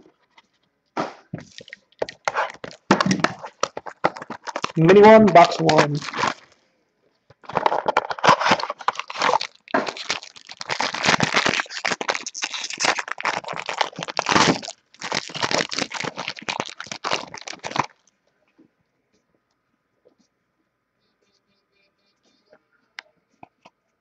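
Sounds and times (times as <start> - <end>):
plastic wrapping tearing and crinkling: 1.4 - 6.6, 7.4 - 18.1.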